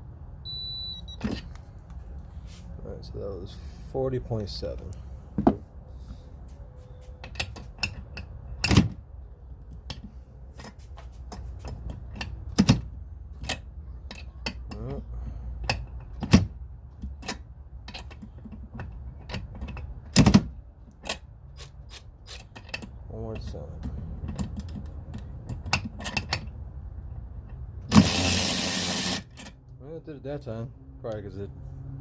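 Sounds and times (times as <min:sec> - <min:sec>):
hand tools clicking and knocking: 0:15.6 - 0:26.5.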